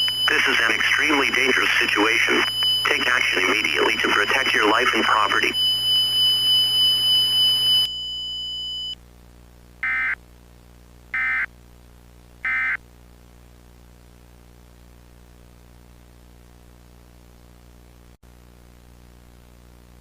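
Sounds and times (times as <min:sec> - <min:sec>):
digital data bursts: 0:00.0 - 0:05.6.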